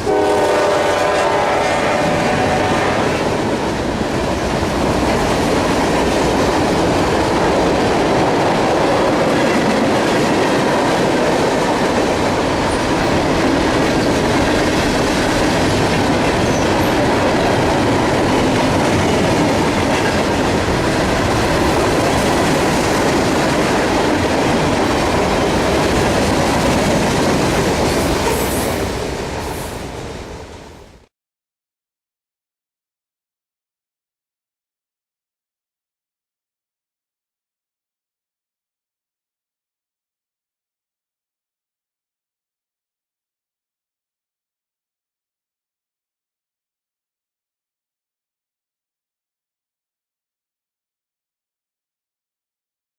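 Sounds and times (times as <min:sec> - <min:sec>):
freight train rumbling past: 0:00.0 - 0:31.0.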